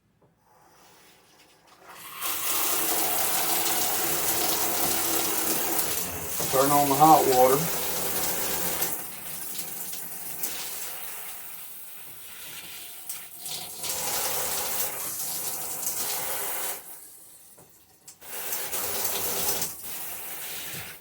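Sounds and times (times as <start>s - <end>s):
shower head spray hissing: 2.2s - 9.0s.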